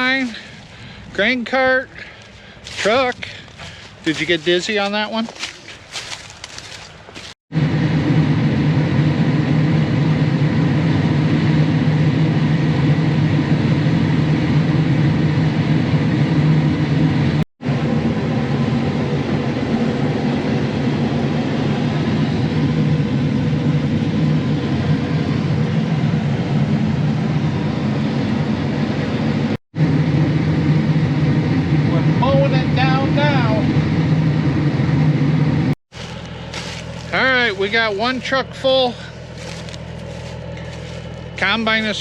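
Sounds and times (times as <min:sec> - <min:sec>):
combine harvester running: 0:00.0 - 0:42.0.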